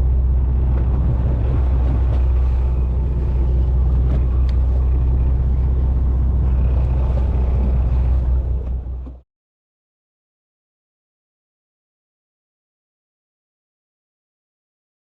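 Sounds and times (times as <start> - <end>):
boat engine rumbling: 0.0 - 9.2.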